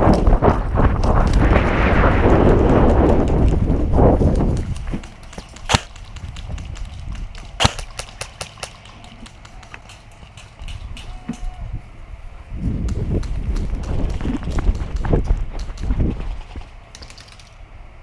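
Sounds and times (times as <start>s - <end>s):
airsoft gunshots: 4.4s - 10.8s.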